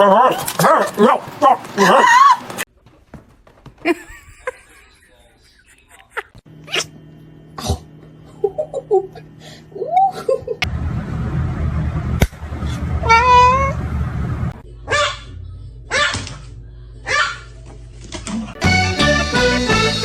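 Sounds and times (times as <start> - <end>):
cat meowing: 13.0 - 13.8.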